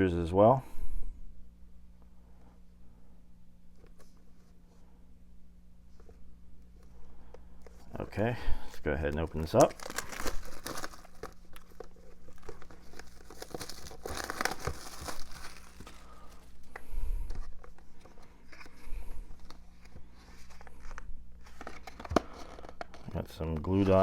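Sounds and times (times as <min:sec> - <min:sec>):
plastic wrap crinkling: 0:07.6 - 0:24.0.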